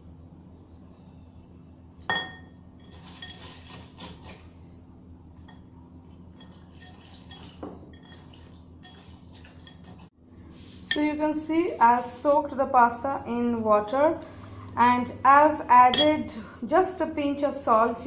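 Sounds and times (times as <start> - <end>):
dishware and utensil clinking: 6.4 - 10.1, 15.9 - 16.3.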